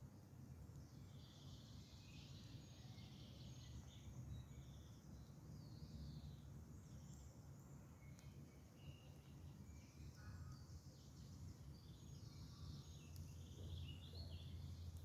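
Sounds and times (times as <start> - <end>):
songbirds chirping and trilling: 0.1 - 15.0
faint click: 8.0 - 8.4, 13.1 - 13.3.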